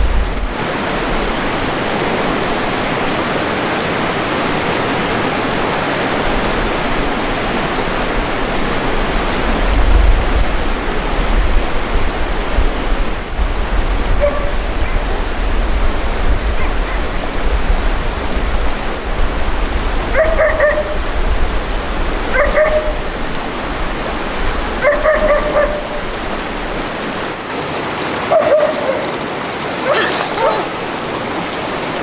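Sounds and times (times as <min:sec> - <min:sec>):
loud steady rushing noise: 0:00.0 - 0:29.9
dog whining: 0:29.8 - 0:30.8.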